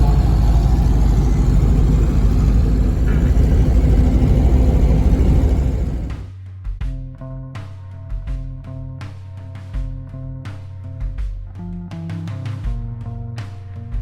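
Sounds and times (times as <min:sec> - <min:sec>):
road vehicle rumbling: 0:00.0 - 0:06.3.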